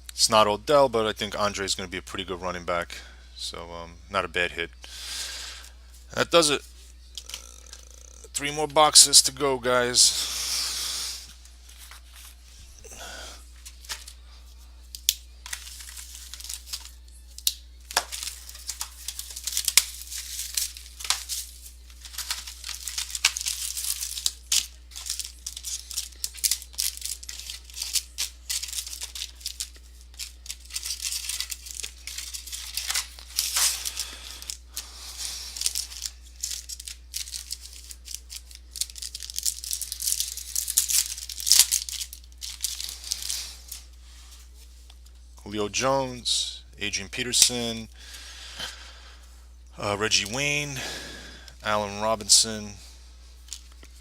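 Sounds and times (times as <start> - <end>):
wrappers tearing and crinkling: 6.9 - 9.4, 14.9 - 45.0
cards clicking: 14.9 - 43.8.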